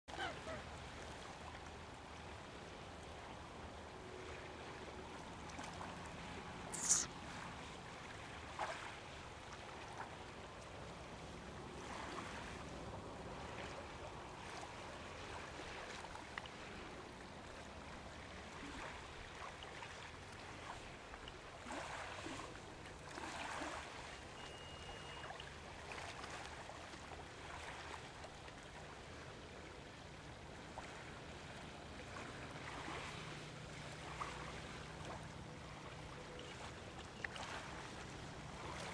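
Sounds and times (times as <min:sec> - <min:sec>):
small waves lapping on shore: 0:00.1 - 0:38.9
sharp water splash: 0:06.7 - 0:07.2.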